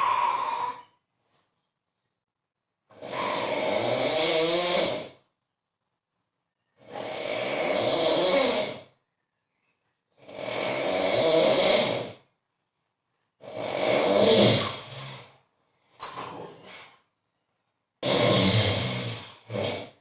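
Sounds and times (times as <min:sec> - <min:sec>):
man snoring loudly: 0:02.9 - 0:05.2, 0:06.8 - 0:09.0, 0:10.2 - 0:12.3, 0:13.4 - 0:15.4, 0:18.0 - 0:20.0.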